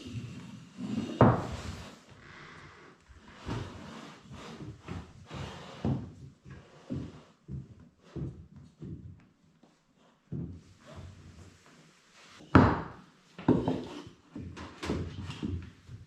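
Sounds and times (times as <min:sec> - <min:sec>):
objects knocking and thudding: 0:12.4 - 0:16.0.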